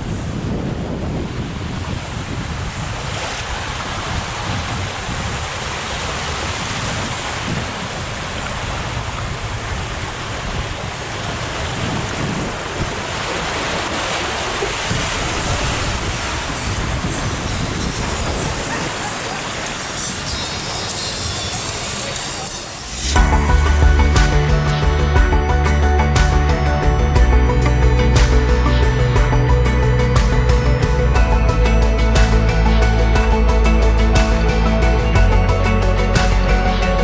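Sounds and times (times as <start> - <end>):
wind buffeting microphone: 0.0 - 19.9
water rushing under raft: 0.0 - 37.0.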